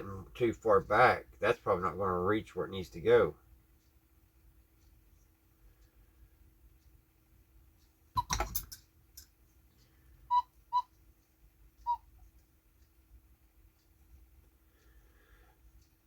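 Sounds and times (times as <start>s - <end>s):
clock parts clicking and knocking: 8.2s - 9.4s.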